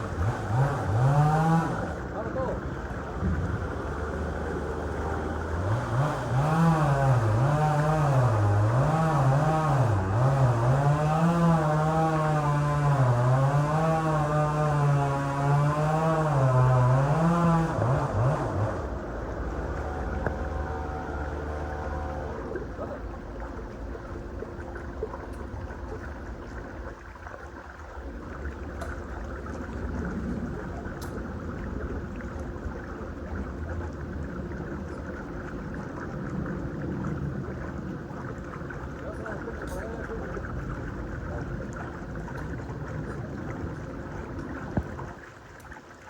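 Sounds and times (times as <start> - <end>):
engine revving up and down: 0.0 - 23.0.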